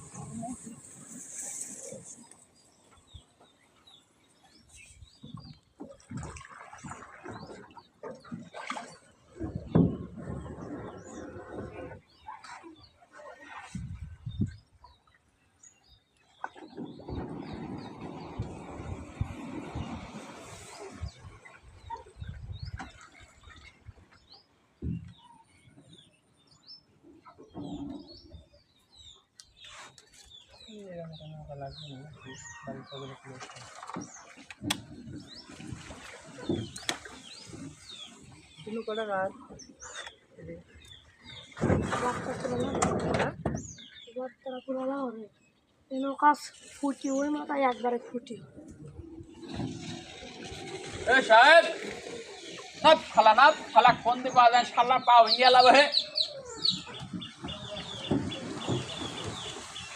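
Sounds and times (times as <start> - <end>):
water splashing and sloshing: 0.0 - 59.9
small birds chirping: 13.7 - 33.0, 33.7 - 59.9.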